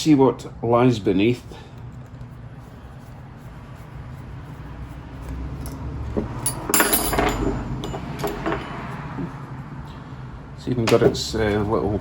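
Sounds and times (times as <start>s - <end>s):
metal and glass parts clinking: 6.4s - 8.8s.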